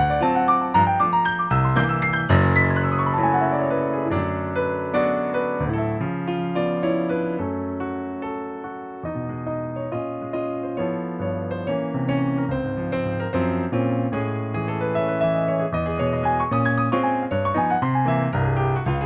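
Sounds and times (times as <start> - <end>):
piano chords and melody: 0.0 - 19.0.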